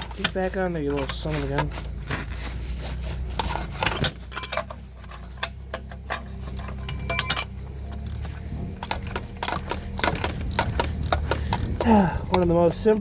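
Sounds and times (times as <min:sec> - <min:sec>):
low steady hum: 0:00.0 - 0:13.0
wrench clinking and scraping metal: 0:00.0 - 0:13.0.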